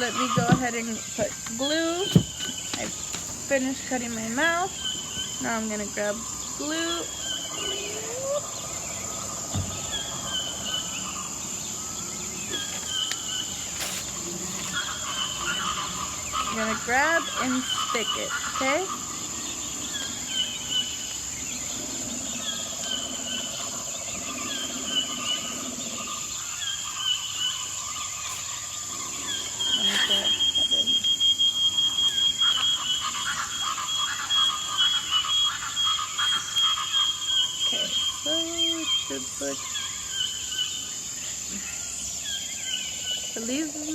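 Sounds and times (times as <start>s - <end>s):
animal chirps and calls: 0.0s - 43.9s
frogs croaking: 0.0s - 43.9s
high insect drone: 0.0s - 43.9s.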